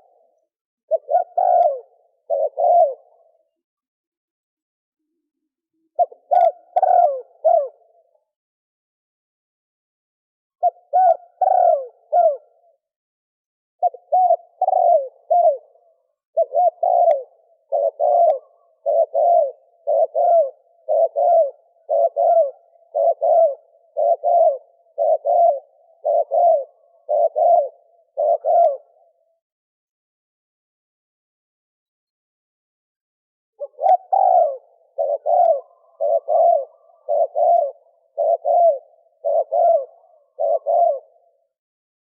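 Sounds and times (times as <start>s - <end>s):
dove cooing: 0.0s - 3.6s, 5.8s - 8.2s, 10.6s - 12.8s, 13.8s - 29.4s, 33.6s - 41.6s.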